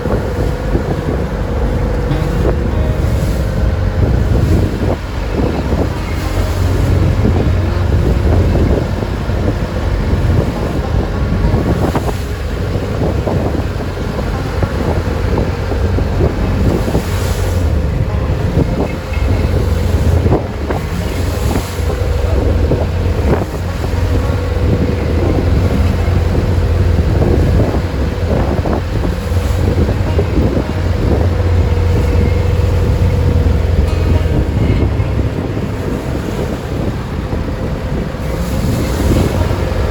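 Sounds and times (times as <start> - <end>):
boat engine running: 0.0 - 39.9
waves splashing against hull: 0.0 - 39.9
wind buffeting microphone: 0.0 - 39.9.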